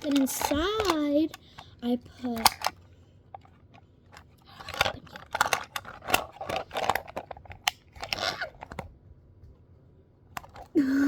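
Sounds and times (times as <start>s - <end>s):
sharp clicks and rustling: 0.0s - 2.8s
plastic fidget toys rummaged: 0.0s - 8.9s, 10.4s - 10.8s.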